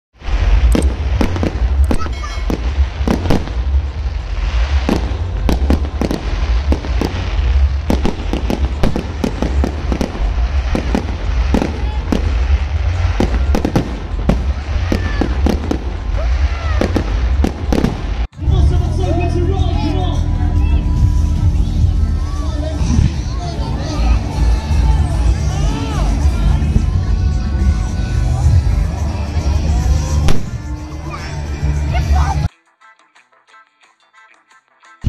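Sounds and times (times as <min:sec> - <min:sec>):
whistling firework glides: 0:00.2 - 0:18.3
fireworks bangs and crackles: 0:00.2 - 0:32.5
low rumble: 0:00.2 - 0:32.5.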